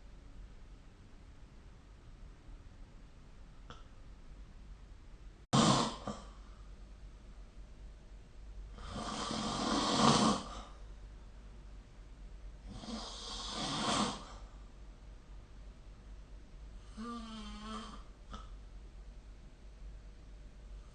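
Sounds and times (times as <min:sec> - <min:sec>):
person snoring: 0:05.6 - 0:06.4, 0:08.8 - 0:10.8, 0:12.6 - 0:14.4, 0:16.9 - 0:18.1.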